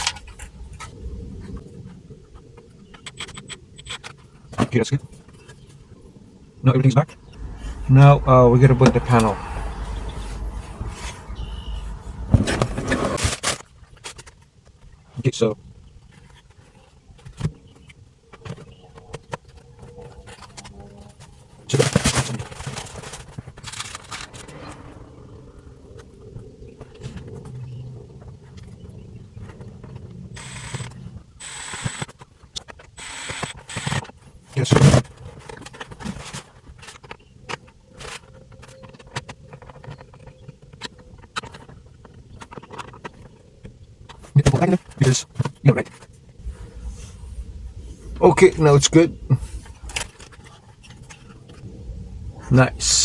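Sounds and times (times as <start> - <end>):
faint steady tone: 0.0 - 13.2
plastic scraping rattle: 17.2 - 25.0, 29.4 - 43.4.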